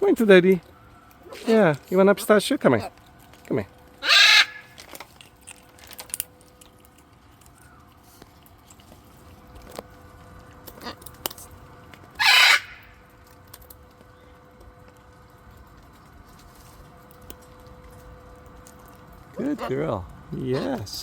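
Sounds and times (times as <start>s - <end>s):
faint steady hum: 0.0s - 21.0s
parrot squawk: 4.0s - 4.8s, 12.2s - 13.0s.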